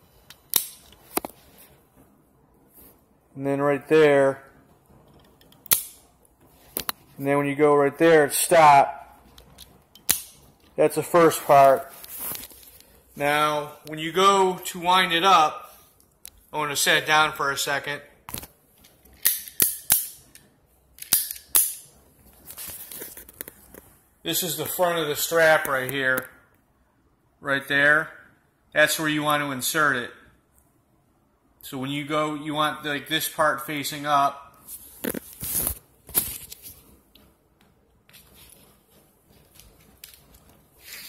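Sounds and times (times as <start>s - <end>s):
strap rustling: 9.1s - 14.0s, 34.6s - 41.0s.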